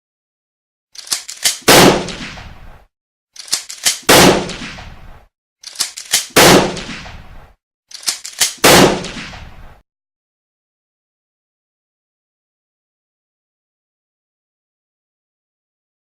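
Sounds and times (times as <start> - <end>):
sharp metallic clicks: 1.0 - 2.2, 3.4 - 4.8, 5.6 - 7.1, 7.9 - 9.4
shotgun shots with echo: 1.5 - 2.6, 4.0 - 5.0, 6.1 - 7.4, 8.4 - 9.8.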